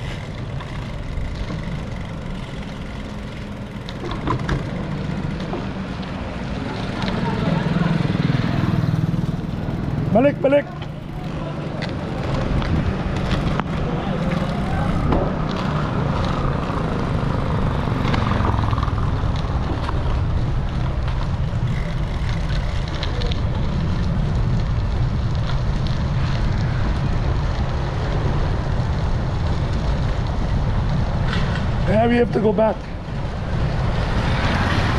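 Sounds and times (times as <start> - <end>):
road noise: 0.0 - 34.9
wind rushing over microphone: 10.9 - 34.9.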